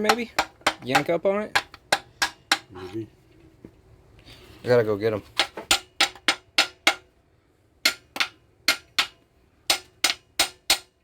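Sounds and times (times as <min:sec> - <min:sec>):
hammer striking metal: 0:00.0 - 0:02.7, 0:05.4 - 0:07.1, 0:07.8 - 0:11.0.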